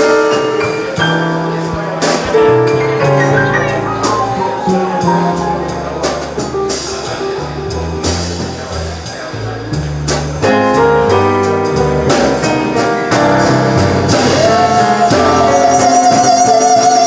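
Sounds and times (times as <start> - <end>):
drum and cymbal hits: 0.0 - 17.0
moving bass line: 1.1 - 16.6
sustained chords: 2.5 - 6.8.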